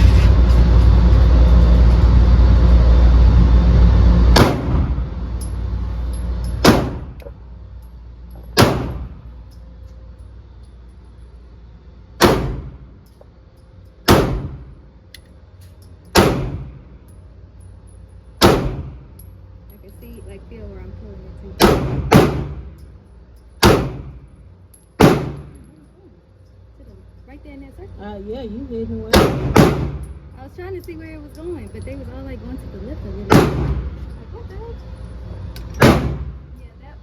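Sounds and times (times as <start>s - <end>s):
loud low rush: 0.0s - 6.0s
pistol shots with echo: 6.6s - 7.1s, 8.6s - 9.2s, 12.2s - 12.8s, 14.1s - 14.6s, 16.2s - 16.7s, 18.4s - 19.0s, 21.6s - 22.6s, 23.6s - 24.2s, 25.0s - 25.6s, 29.2s - 30.0s, 33.3s - 33.9s, 35.8s - 36.3s.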